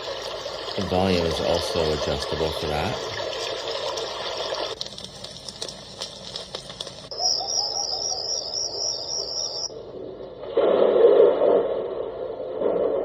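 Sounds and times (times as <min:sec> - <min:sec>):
high warbling chirps: 0:07.1 - 0:09.8.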